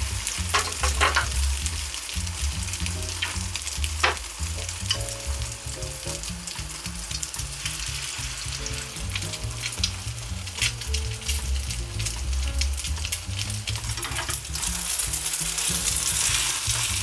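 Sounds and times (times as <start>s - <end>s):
egg sizzling in a frying pan: 0.0s - 17.0s
utensil scraping a pan: 0.2s - 1.6s, 7.9s - 17.0s.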